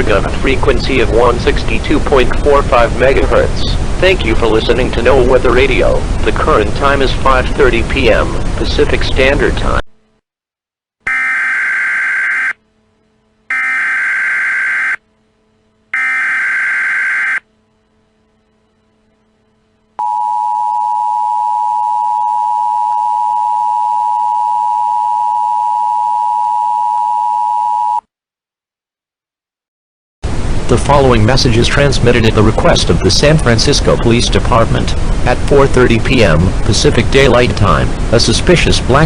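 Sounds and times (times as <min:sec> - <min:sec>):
screeching data tones: 0:13.5 - 0:15.0, 0:16.0 - 0:17.4.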